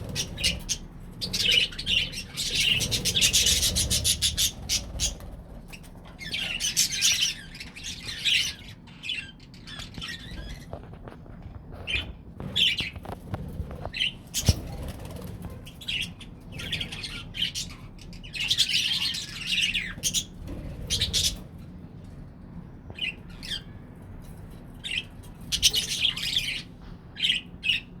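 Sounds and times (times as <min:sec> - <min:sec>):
budgerigars chattering and squawking: 0:00.0 - 0:11.0, 0:11.8 - 0:21.4, 0:24.8 - 0:28.0.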